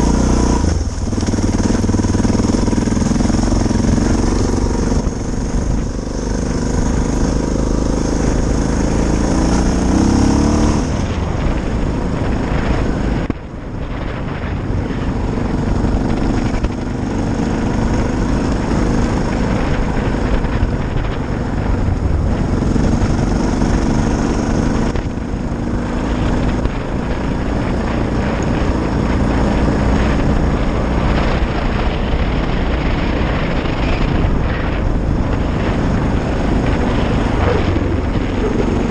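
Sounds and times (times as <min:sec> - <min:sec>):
motorcycle engine running: 0:00.0 - 0:38.9.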